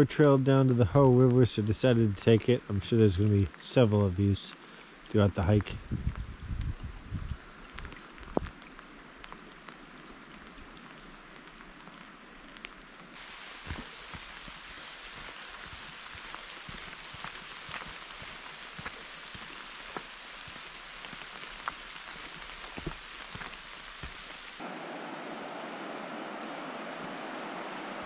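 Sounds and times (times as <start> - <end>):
rushing water hiss: 0.0 - 6.6, 13.1 - 28.0.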